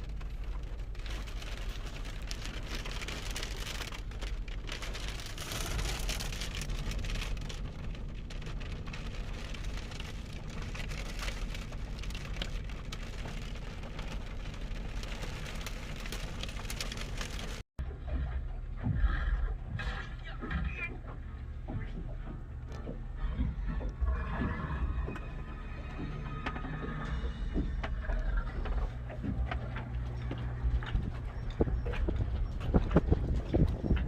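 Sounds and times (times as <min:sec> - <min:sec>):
strong gusting wind on microphone: 0:31.0 - 0:34.0.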